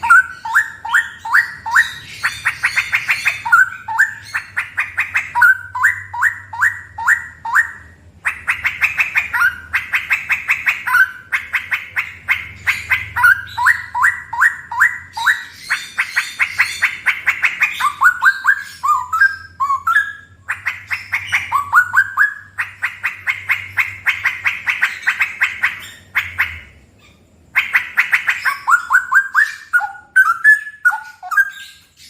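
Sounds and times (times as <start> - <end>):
bird singing whistled notes: 0.0 - 8.0, 12.5 - 32.0.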